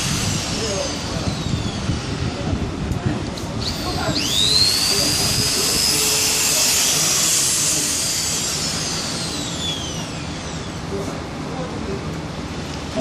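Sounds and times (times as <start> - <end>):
gear grinding whine: 0.0 - 11.1.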